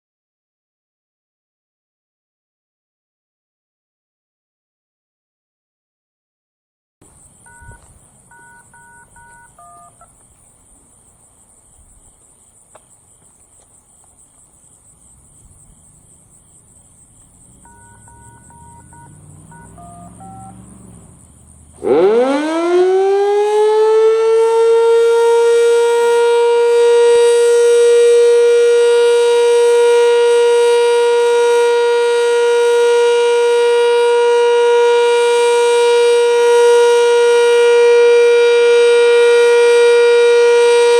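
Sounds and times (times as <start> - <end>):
paired radio beeps: 7.4 - 10.2, 17.7 - 20.6
outdoor warning siren: 7.5 - 10.2, 17.6 - 40.9.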